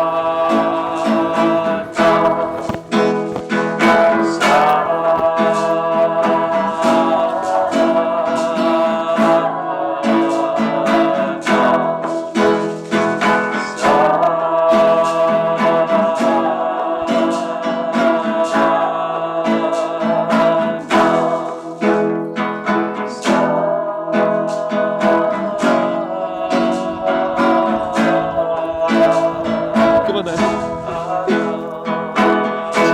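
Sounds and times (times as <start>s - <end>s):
acoustic guitar strumming: 0.0s - 32.9s.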